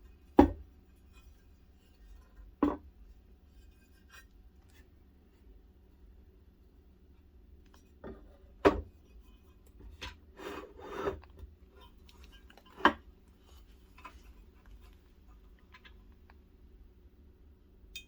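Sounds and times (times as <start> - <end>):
scraping and rubbing: 10.2 - 15.5.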